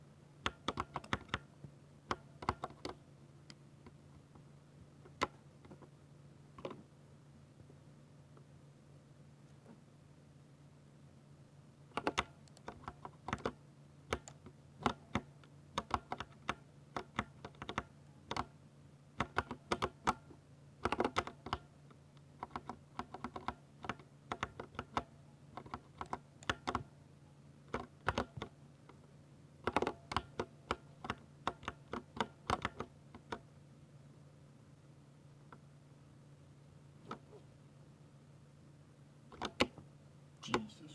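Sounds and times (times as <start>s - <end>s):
typing on mechanical keyboard: 0.4s - 1.4s, 2.1s - 3.0s, 12.0s - 18.5s, 19.2s - 20.2s, 20.8s - 21.7s, 22.4s - 26.9s, 29.6s - 33.4s.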